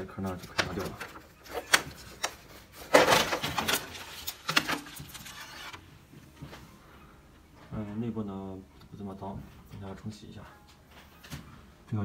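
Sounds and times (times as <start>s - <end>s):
plastic scraping rub: 0.4s - 5.9s.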